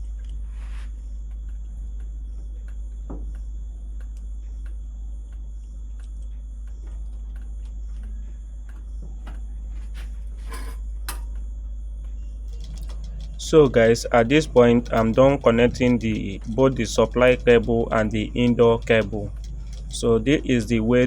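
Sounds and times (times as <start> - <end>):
steady low hum: 0.0 - 21.0
screwdriver clicks and knocks: 12.5 - 21.0.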